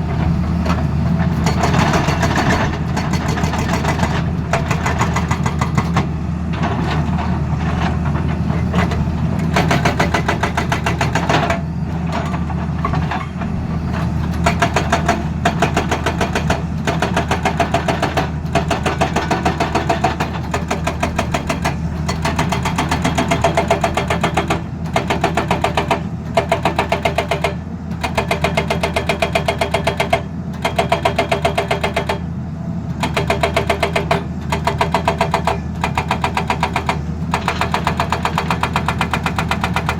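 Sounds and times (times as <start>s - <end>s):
excavator engine running: 0.0s - 39.9s
hydraulic breaker hammering: 8.8s - 11.6s, 14.4s - 32.3s, 33.0s - 39.9s.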